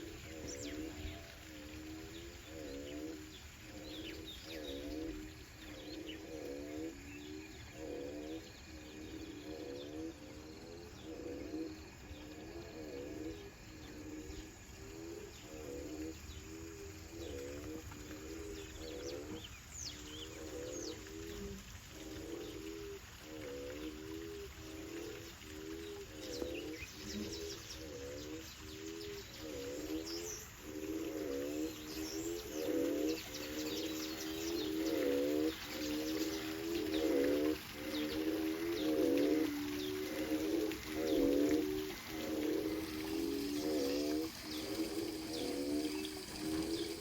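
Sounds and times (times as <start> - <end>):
low repeating animal call: 20.3 - 47.0.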